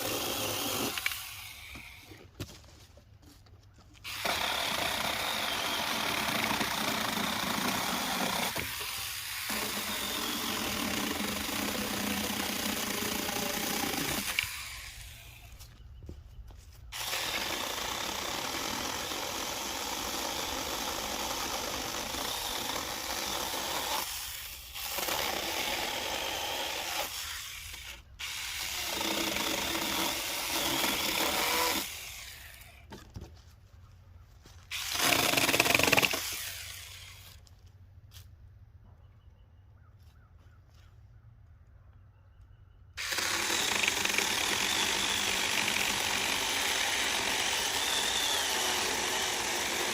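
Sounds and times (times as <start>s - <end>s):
small chainsaw cutting wood: 0.0s - 2.2s, 4.0s - 15.6s, 16.9s - 33.0s, 34.7s - 37.4s, 43.0s - 49.9s.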